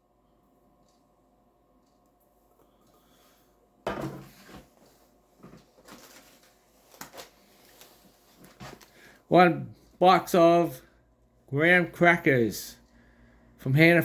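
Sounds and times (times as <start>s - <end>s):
packaging rustling: 4.7s - 9.1s.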